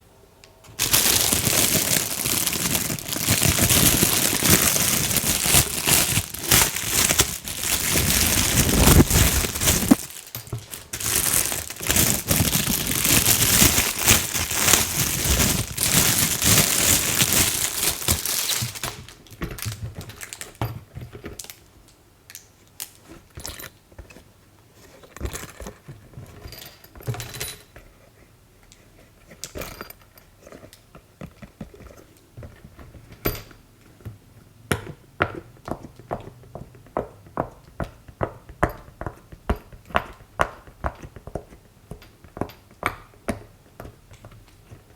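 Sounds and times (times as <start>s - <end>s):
plastic packaging crinkling: 0.6s - 20.6s.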